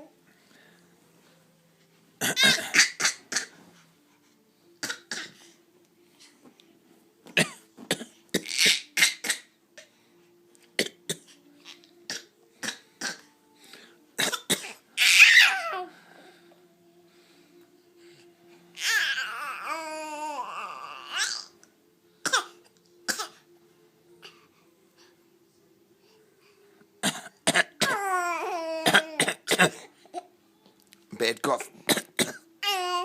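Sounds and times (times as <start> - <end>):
small child coughing: 2.2 - 3.6, 27.0 - 28.2, 28.8 - 29.9.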